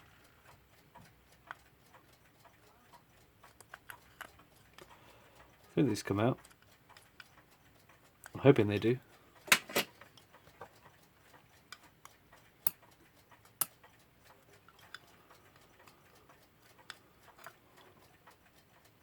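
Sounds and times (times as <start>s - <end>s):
clock parts clicking: 0.0s - 19.0s
faint irregular ticks: 0.0s - 19.0s.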